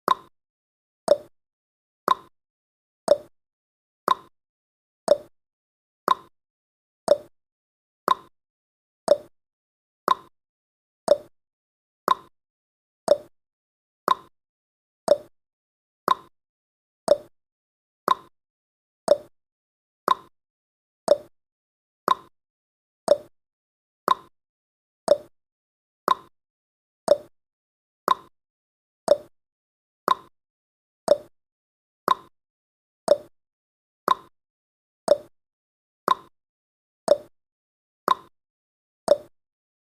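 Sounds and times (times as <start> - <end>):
clock tick-tock: 0.1 - 0.3, 1.1 - 1.3, 2.1 - 2.3, 3.1 - 3.3, 4.1 - 4.3, 5.1 - 5.3, 6.1 - 6.3, 7.1 - 7.3, 8.1 - 8.3, 9.1 - 9.3, 10.1 - 10.3, 11.1 - 11.3, 12.1 - 12.3, 13.1 - 13.3, 14.1 - 14.3, 15.1 - 15.3, 16.1 - 16.3, 17.1 - 17.3, 18.1 - 18.3, 19.1 - 19.3, 20.1 - 20.3, 21.1 - 21.3, 22.1 - 22.3, 23.1 - 23.3, 24.1 - 24.3, 25.1 - 25.3, 26.1 - 26.3, 27.1 - 27.3, 28.1 - 28.3, 29.1 - 29.3, 30.1 - 30.3, 31.1 - 31.3, 32.1 - 32.3, 33.1 - 33.3, 34.1 - 34.3, 35.1 - 35.3, 36.1 - 36.3, 37.1 - 37.3, 38.1 - 38.3, 39.1 - 39.3.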